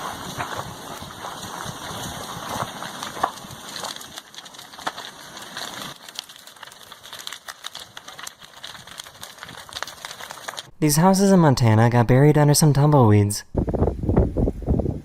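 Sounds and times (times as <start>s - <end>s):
burning wood snapping and cracking: 0.0s - 10.8s
lava crackling and crunching: 0.0s - 11.4s.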